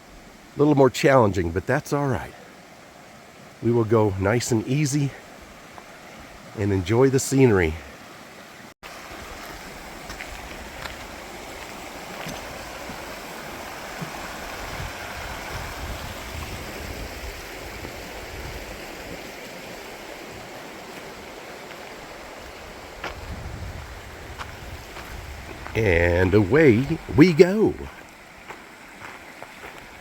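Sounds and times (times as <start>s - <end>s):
babbling brook: 25.8s - 30.0s.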